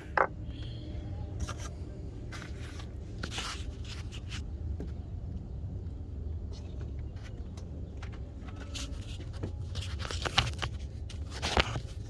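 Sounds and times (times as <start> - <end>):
parts clicking and scraping: 0.0 - 0.4, 6.7 - 12.0.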